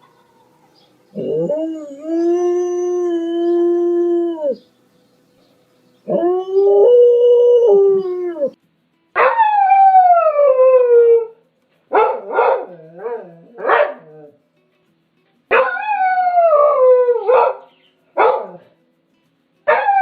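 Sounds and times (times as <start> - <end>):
dog howling: 1.1 - 4.7, 6.1 - 8.6, 15.6 - 17.6.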